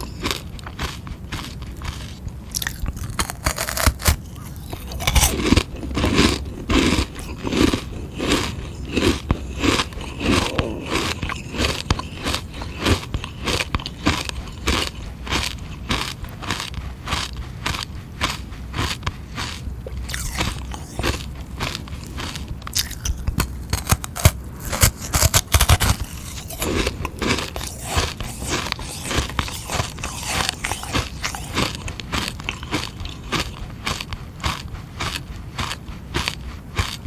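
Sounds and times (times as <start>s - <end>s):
crunching frozen ice: 0.0s - 37.0s.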